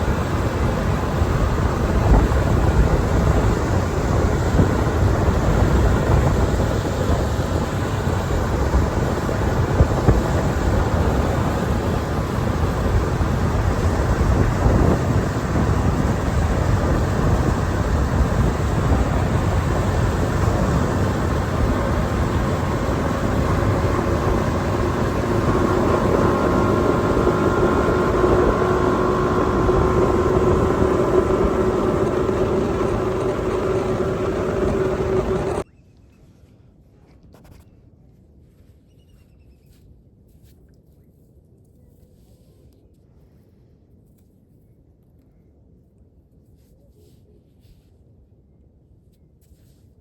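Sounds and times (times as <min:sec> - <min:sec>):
outboard engine drone: 0:00.0 - 0:35.6
wind: 0:00.0 - 0:50.0
water rushing: 0:16.4 - 0:35.6.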